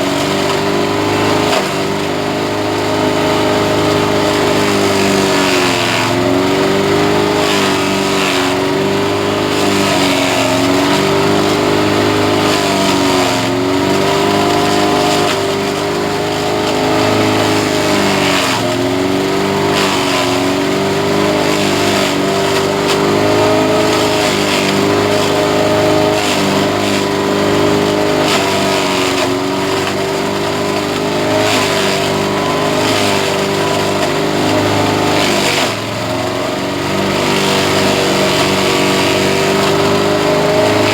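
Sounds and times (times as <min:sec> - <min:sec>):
grass chopper engine running: 0:00.0 - 0:40.9.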